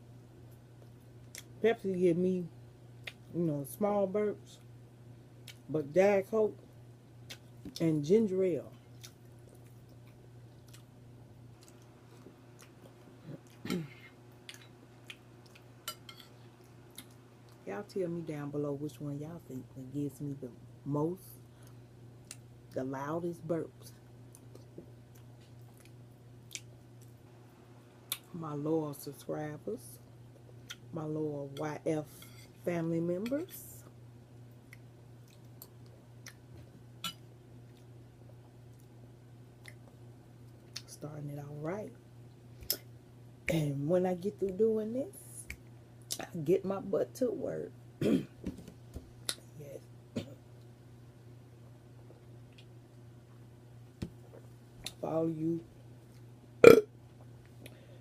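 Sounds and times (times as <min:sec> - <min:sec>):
steady low hum: 0:00.0 - 0:58.0
person chewing food: 0:08.9 - 0:10.9, 0:11.6 - 0:17.6, 0:24.3 - 0:27.2.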